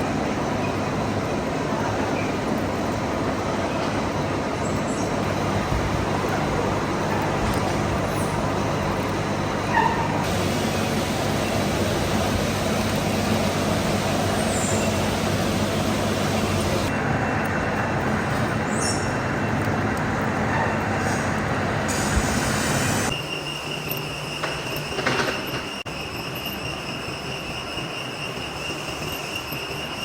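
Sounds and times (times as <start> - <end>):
thin steady whine: 2.6 - 18.3
heavy machinery running: 5.1 - 23.6.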